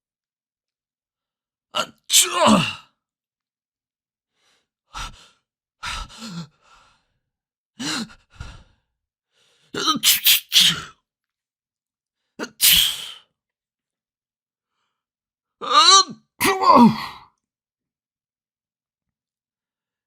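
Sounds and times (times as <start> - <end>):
person sneezing: 9.8 - 10.9, 12.4 - 13.2.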